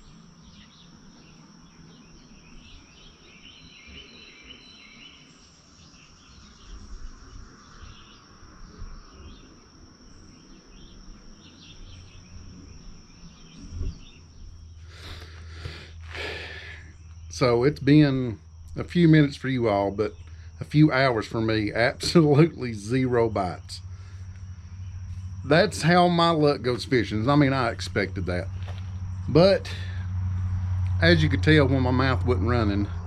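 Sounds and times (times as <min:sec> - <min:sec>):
bird chirps: 0:00.0 - 0:33.0
high-pitched insect drone: 0:00.0 - 0:33.0
low rumble: 0:16.6 - 0:33.0.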